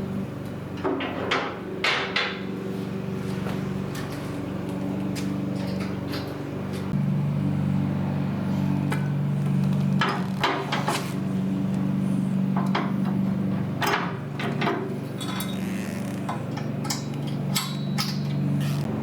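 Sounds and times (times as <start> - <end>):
steady low hum: 0.0 - 19.0
metallic clinks and knocks: 15.1 - 15.6.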